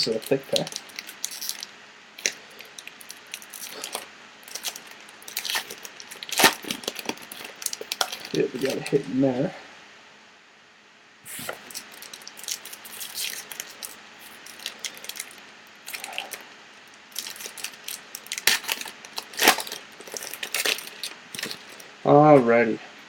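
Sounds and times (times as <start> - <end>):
wrappers crinkling: 0.0 - 9.1, 11.3 - 22.0.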